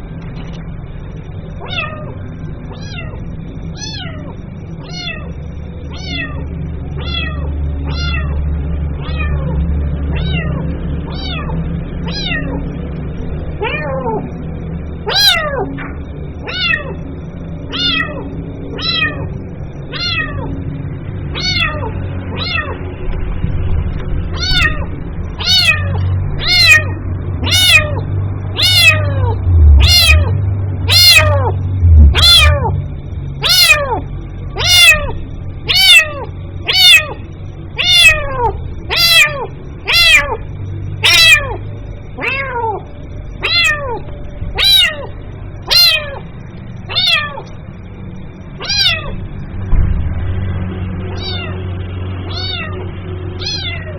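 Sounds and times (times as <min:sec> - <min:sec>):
kitten meowing: 0:01.6 - 0:06.4, 0:07.0 - 0:08.4, 0:09.0 - 0:09.5, 0:10.1 - 0:12.6, 0:13.6 - 0:14.3, 0:15.0 - 0:17.0, 0:17.7 - 0:19.3, 0:19.9 - 0:20.6, 0:21.3 - 0:22.8, 0:24.3 - 0:32.8, 0:33.4 - 0:46.3, 0:46.9 - 0:47.5, 0:48.6 - 0:49.2, 0:51.1 - 0:51.6, 0:52.2 - 0:53.9.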